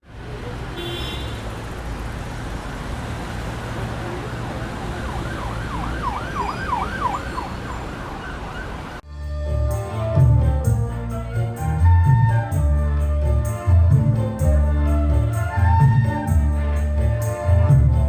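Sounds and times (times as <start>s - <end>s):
traffic noise: 0.0s - 18.0s
emergency siren yelping: 4.9s - 9.0s.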